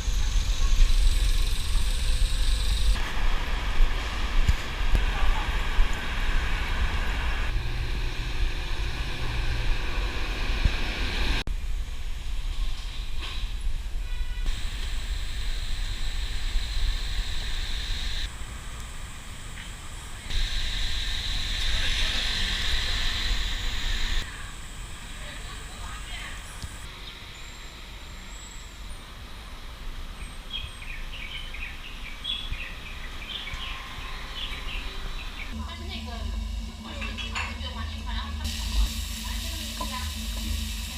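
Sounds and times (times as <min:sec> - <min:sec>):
city traffic: 0:00.0 - 0:40.9
birds chirping: 0:30.5 - 0:35.8.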